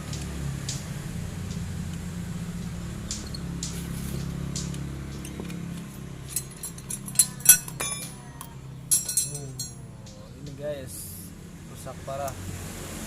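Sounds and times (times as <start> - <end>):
steady low hum: 0.0 - 13.0
metal tools clinking and scraping: 5.1 - 9.9.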